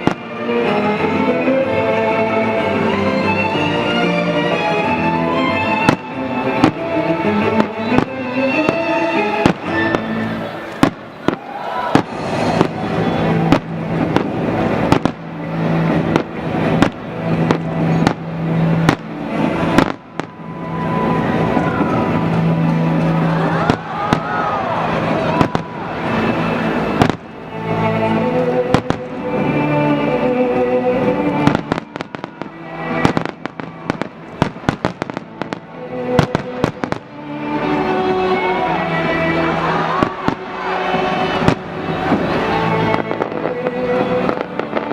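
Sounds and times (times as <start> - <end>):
fireworks bursting bangs: 0.0 - 1.2, 4.8 - 29.7, 31.1 - 44.9
show music: 0.0 - 44.9.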